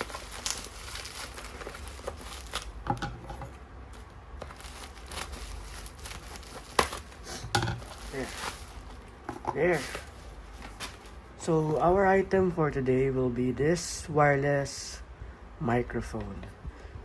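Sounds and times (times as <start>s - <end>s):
packing tape tearing: 0.0s - 2.9s, 4.4s - 8.9s
bubble wrap crinkling: 0.0s - 11.9s.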